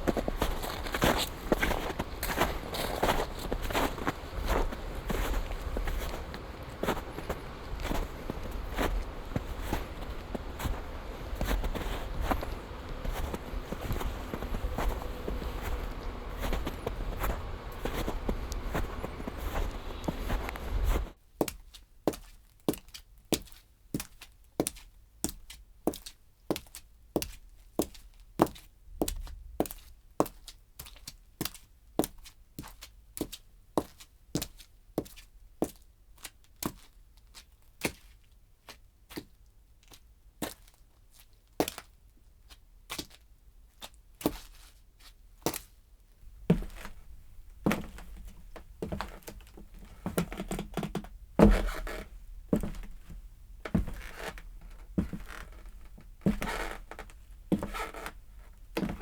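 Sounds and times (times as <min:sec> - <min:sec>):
clicking footsteps: 0:00.0 - 0:21.2, 0:46.2 - 0:59.0
footsteps scuffing: 0:00.0 - 0:24.8, 0:44.2 - 0:59.0.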